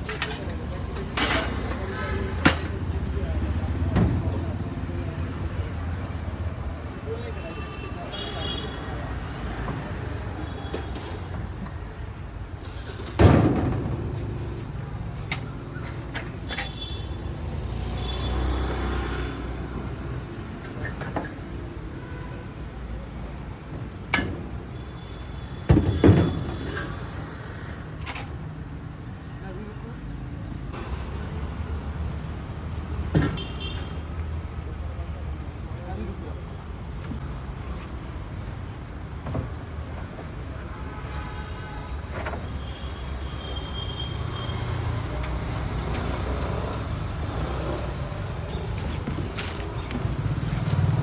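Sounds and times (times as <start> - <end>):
low rumble of passing vehicles: 0.0 - 40.7, 43.8 - 51.0
street background noise: 0.0 - 51.0
loud thuds: 13.0 - 15.0.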